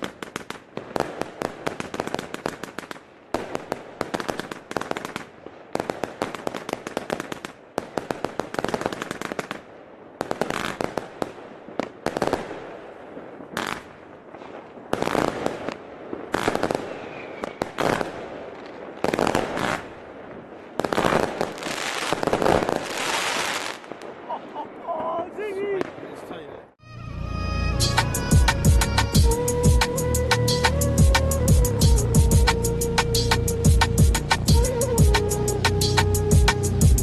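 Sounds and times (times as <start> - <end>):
fireworks firing rapid shots: 0.0 - 24.8
loud firework bursts: 0.0 - 26.2.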